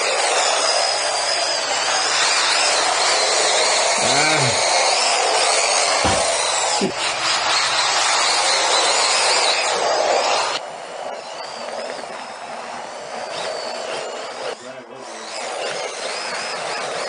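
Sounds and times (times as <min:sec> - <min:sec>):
rc car electric motors whining: 0:00.0 - 0:17.0
short voice sounds: 0:04.0 - 0:04.6.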